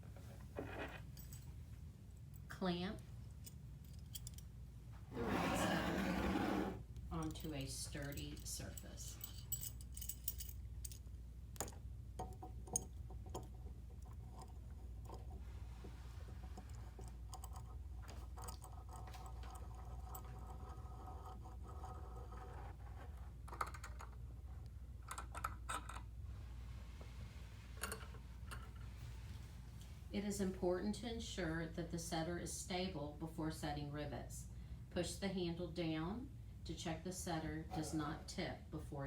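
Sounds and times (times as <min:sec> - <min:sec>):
faint low hum: 0:00.0 - 0:39.0
metal parts clicking and tapping: 0:07.2 - 0:15.2.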